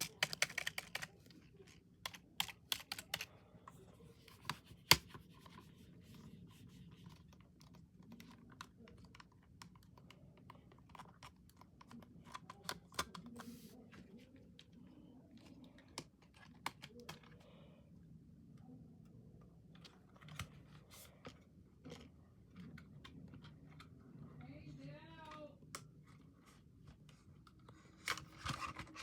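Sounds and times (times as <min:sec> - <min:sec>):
computer keyboard keystrokes: 0:00.0 - 0:01.2, 0:02.0 - 0:03.3, 0:07.6 - 0:13.4.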